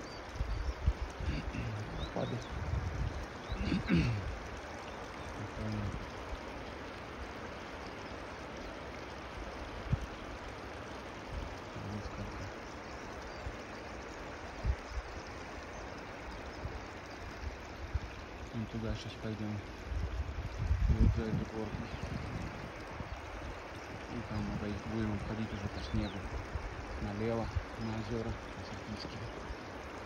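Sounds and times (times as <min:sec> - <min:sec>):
waterfall rushing: 0:01.1 - 0:17.4.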